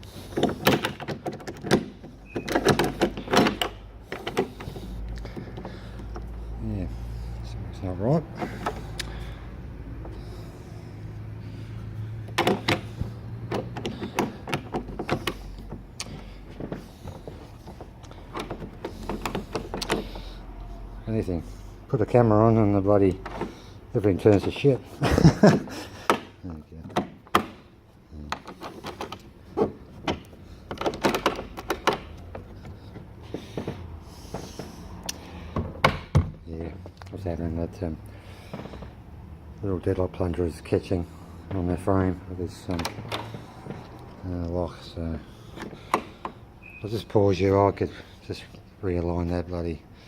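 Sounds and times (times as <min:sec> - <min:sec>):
door latch metallic clicks: 0:00.4 - 0:04.6, 0:28.3 - 0:32.4.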